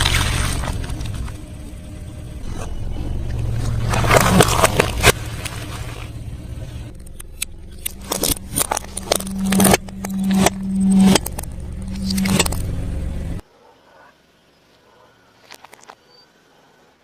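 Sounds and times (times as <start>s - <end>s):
vehicle engine running: 0.0s - 13.4s
food crunching under wheels: 3.3s - 6.1s.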